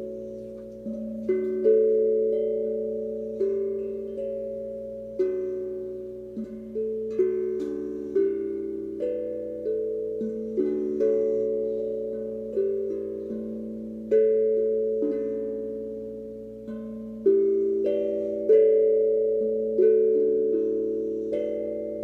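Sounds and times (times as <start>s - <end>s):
steel tongue drum notes: 0.0s - 22.0s.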